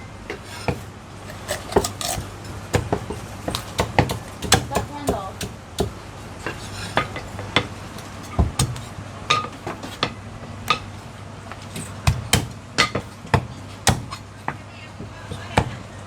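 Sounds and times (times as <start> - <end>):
cleaver chopping on wooden block: 1.5 - 6.0, 8.3 - 10.9, 11.7 - 15.9.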